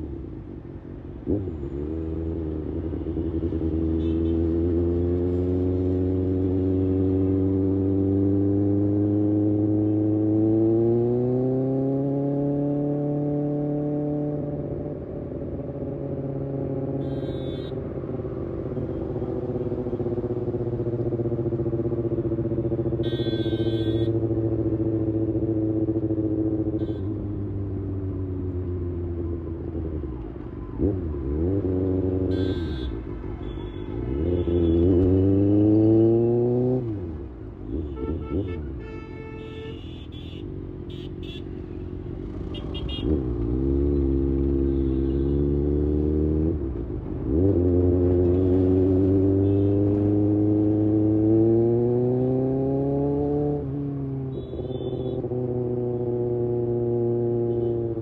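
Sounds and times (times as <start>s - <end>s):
motorcycle engine revving: 30.8s - 38.6s, 42.2s - 58.0s.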